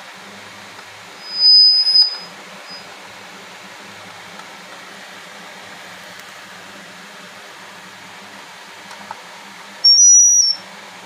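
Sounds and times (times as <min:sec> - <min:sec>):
steady hiss and low hum: 0:00.0 - 0:11.0
microphone feedback squeal: 0:01.2 - 0:02.9, 0:09.8 - 0:10.6.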